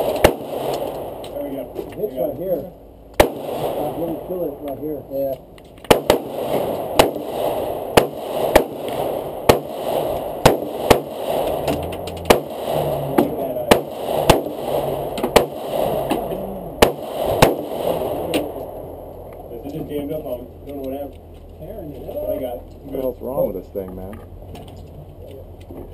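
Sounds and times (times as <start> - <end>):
handgun shots: 3.2 - 3.7, 5.8 - 12.9.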